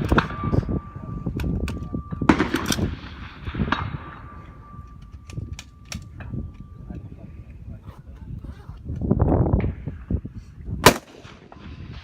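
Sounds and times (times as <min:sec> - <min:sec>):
rifle shots: 0:10.8 - 0:12.0.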